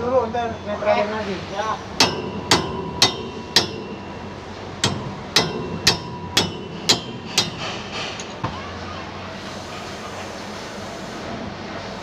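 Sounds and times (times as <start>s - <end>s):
hammer striking metal: 2.0s - 8.8s.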